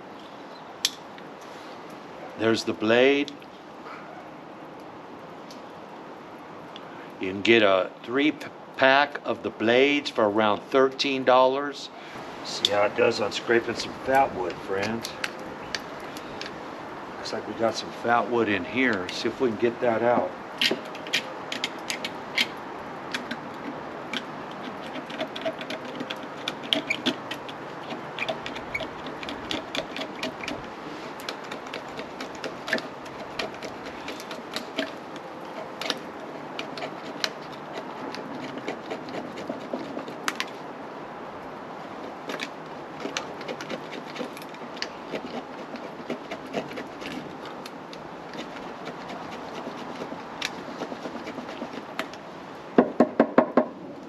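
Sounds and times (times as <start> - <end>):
knife blade scraping wood: 18.9 - 40.6, 42.0 - 52.2.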